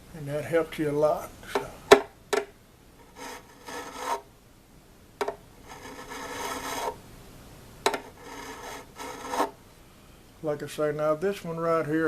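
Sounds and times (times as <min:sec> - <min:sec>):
file scraping metal frets: 0:03.0 - 0:04.2, 0:05.6 - 0:07.0, 0:08.0 - 0:09.6.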